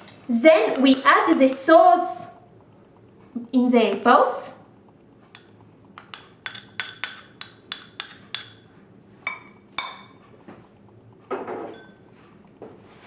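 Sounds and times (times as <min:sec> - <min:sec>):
metal spoon clinking against bowl: 0:05.4 - 0:08.7, 0:09.3 - 0:10.2, 0:11.7 - 0:12.0.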